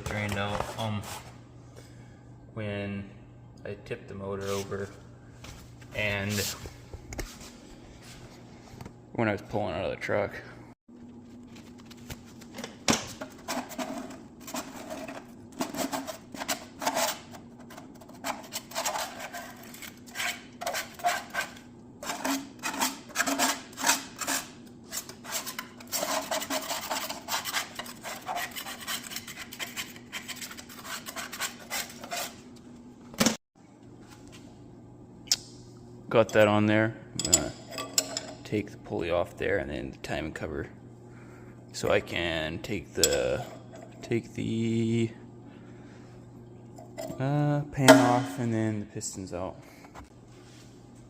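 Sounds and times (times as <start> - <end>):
steady low hum: 0.0 - 51.0
hand tools scraping metal: 13.5 - 32.4.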